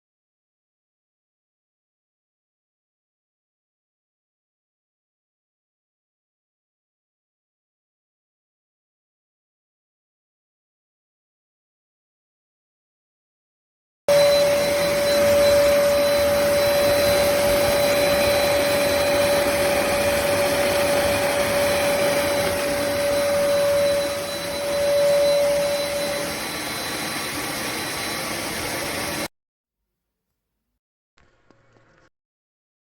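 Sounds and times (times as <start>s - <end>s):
vacuum cleaner running: 14.1s - 29.3s.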